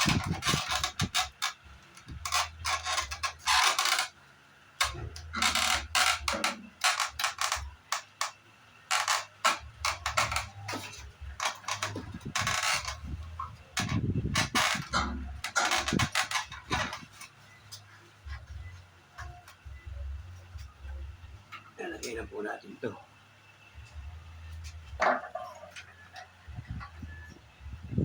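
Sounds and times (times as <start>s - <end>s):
parts clicking and scraping: 0.0s - 4.2s, 4.8s - 22.2s.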